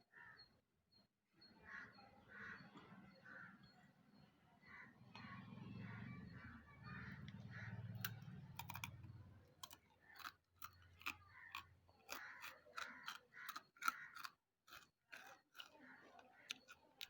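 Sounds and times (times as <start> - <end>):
crunchy chewing: 5.0 - 17.0.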